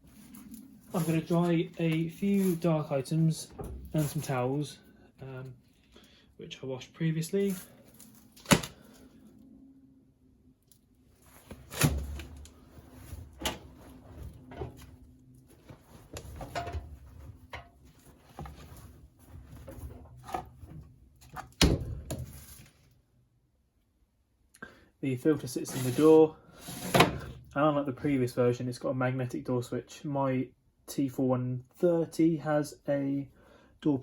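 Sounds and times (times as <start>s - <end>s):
laundry rustling: 11.2s - 21.2s.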